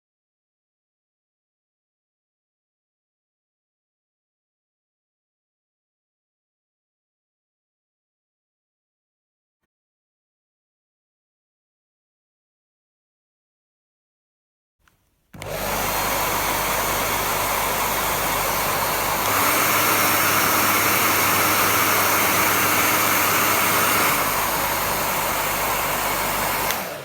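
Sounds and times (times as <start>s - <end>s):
hair dryer blowing: 15.4s - 27.0s.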